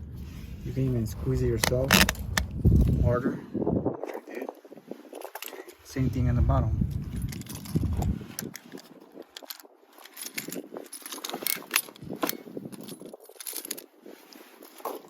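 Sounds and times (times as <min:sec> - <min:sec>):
low handling rumble: 0:00.0 - 0:03.2, 0:05.9 - 0:08.2
snow chain links clinking: 0:01.2 - 0:02.6, 0:05.0 - 0:06.0, 0:06.8 - 0:15.0.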